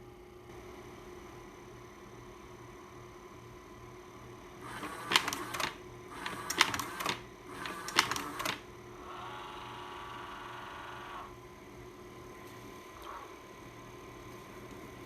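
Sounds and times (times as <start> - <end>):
slide projector clatter and clicks: 4.7 - 8.7
motor whine: 4.7 - 11.4.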